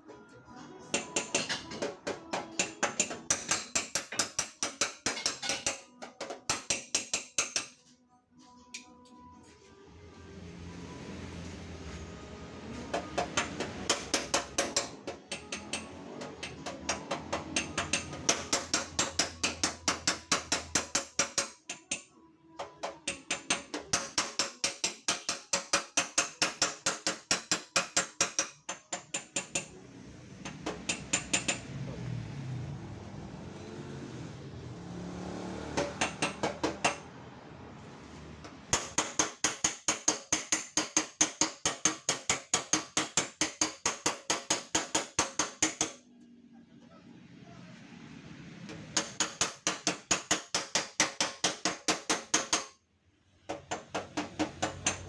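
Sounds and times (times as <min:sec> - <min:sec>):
hammer tapping on sheet metal: 0:00.9 - 0:07.8, 0:12.9 - 0:29.7, 0:30.4 - 0:31.7, 0:35.7 - 0:37.1, 0:38.4 - 0:46.0, 0:49.0 - 0:52.8, 0:53.5 - 0:55.0.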